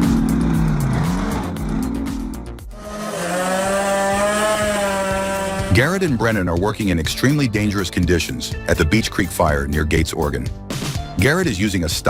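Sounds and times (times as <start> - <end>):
chainsaw running at high speed: 0.0 - 6.4
truck diesel engine labouring: 0.0 - 7.0.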